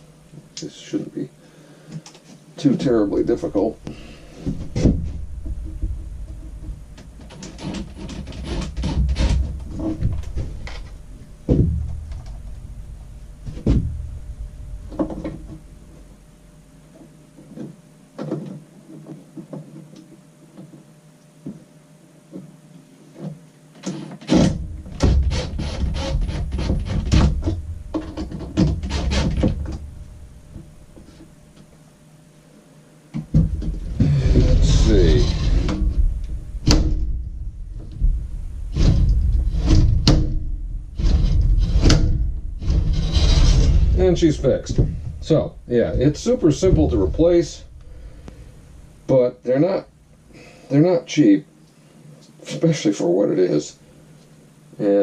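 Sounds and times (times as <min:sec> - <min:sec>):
low bumping and rubbing: 0:03.0 - 0:19.7, 0:24.1 - 0:31.8, 0:33.2 - 0:49.2.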